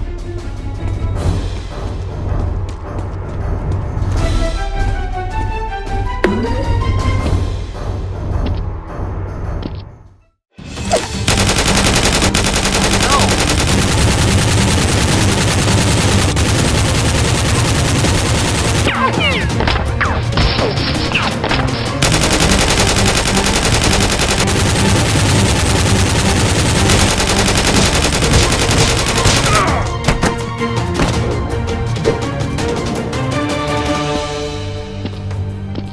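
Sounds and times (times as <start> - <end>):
rapid automatic gunfire: 11.2 - 19.1, 22.0 - 29.8.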